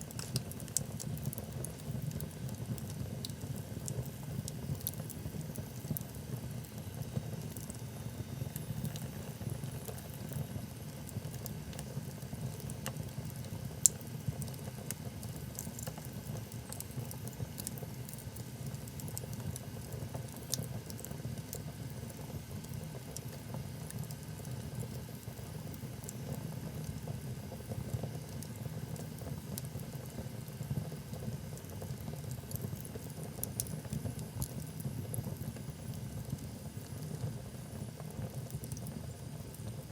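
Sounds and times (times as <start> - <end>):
logs crackling and popping: 0.1 - 6.2, 12.6 - 21.5.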